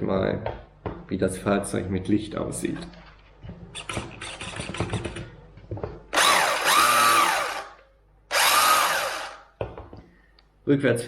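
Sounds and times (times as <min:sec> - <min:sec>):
rc car electric motor whining: 0:06.2 - 0:07.7, 0:08.3 - 0:09.4.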